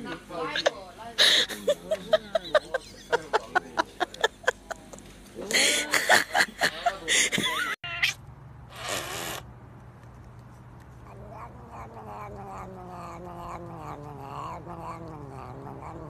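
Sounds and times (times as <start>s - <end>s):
cat yowling: 7.8s - 8.2s, 11.1s - 16.0s.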